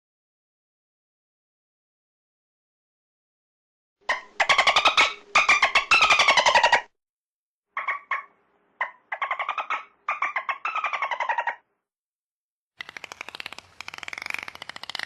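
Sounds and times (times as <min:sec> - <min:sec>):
dolphin clicks and buzzing calls: 0:12.8 - 0:15.0.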